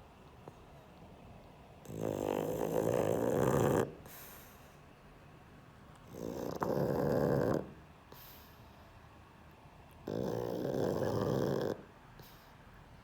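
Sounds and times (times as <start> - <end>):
dog snoring: 1.8 - 4.6, 6.0 - 8.5, 10.0 - 12.5.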